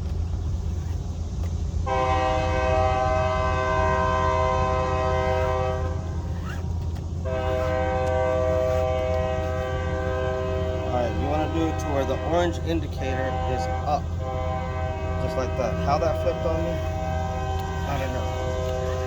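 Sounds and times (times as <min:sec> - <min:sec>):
train horn blasts: 0:01.8 - 0:19.0.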